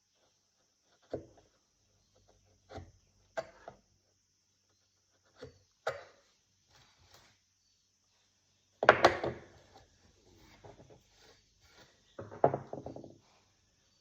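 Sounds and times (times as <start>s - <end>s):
sharp wooden knocks: 8.8s - 9.5s.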